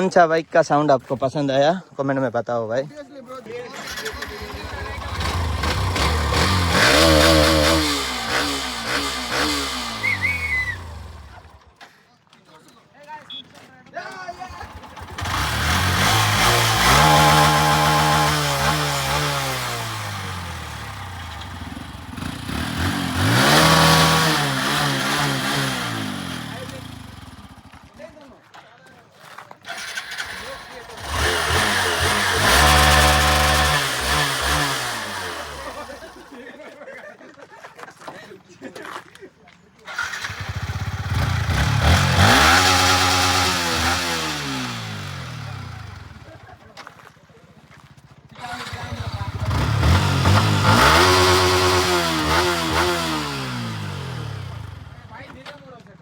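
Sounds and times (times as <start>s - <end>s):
motorcycle engine revving: 3.7s - 11.7s, 14.3s - 28.1s, 29.6s - 36.3s, 39.9s - 46.6s, 47.9s - 55.6s.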